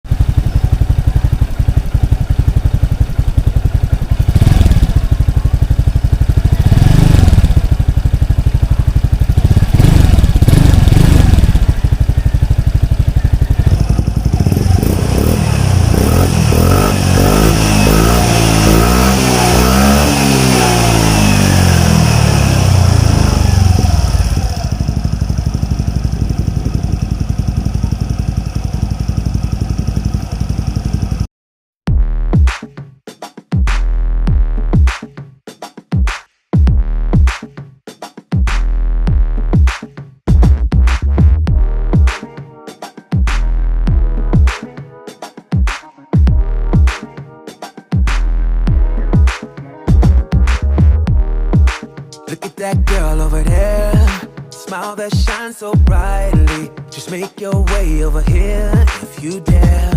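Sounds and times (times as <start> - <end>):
scooter engine idling and revving: 0.0 - 31.3, 49.9 - 51.9, 52.8 - 54.4, 55.8 - 56.7, 57.6 - 59.9.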